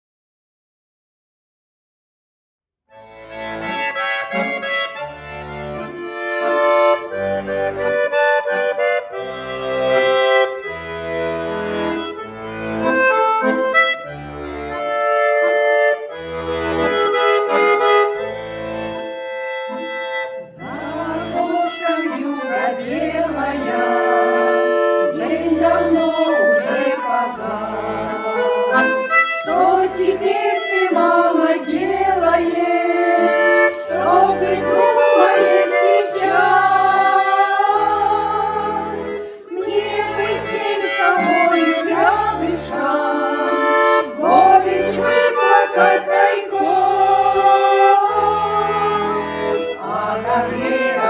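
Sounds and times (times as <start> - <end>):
accordion playing folk melody: 2.9 - 51.0
women singing folk song: 20.4 - 51.0.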